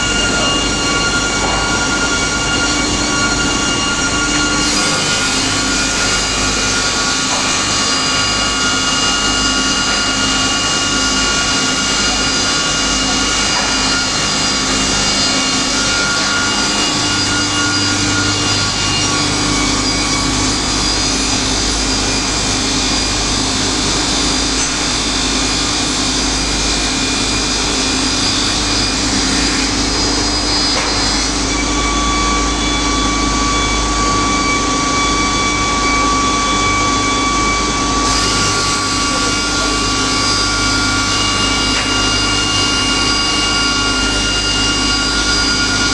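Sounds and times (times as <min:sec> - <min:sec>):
rip saw machine running: 0:00.0 - 0:45.9.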